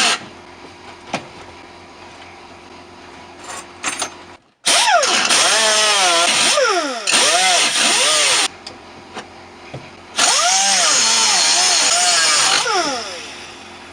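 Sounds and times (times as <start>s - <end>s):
angle grinder on sheet steel: 4.7s - 8.5s, 10.2s - 13.4s.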